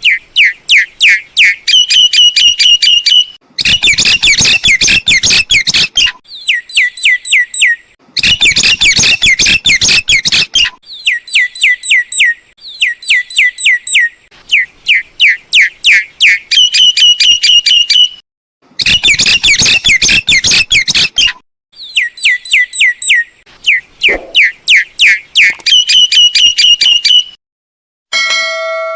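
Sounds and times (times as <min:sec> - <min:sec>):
myna calling: 0:22.8 - 0:25.2.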